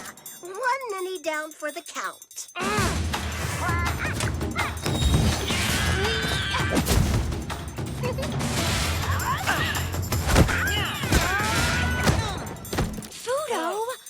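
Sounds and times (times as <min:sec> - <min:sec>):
cartoon action music: 0:02.6 - 0:12.9
hit and crash sound effects: 0:04.8 - 0:07.8.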